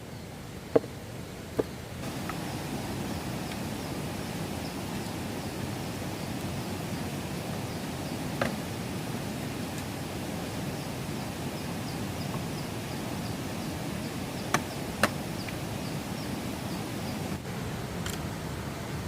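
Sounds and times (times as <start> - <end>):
outdoor background noise: 0.0 - 19.0.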